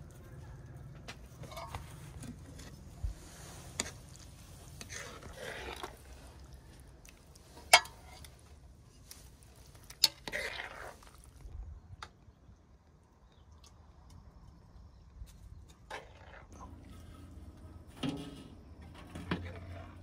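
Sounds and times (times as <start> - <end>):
dishes and utensils clinking: 1.4 - 2.5
dish scraping: 1.4 - 2.9, 15.9 - 20.0.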